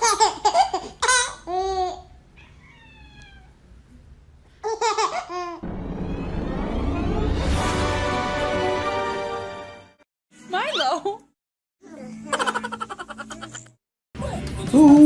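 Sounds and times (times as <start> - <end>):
high-pitched laughter-like vocal sounds: 12.0 - 15.0.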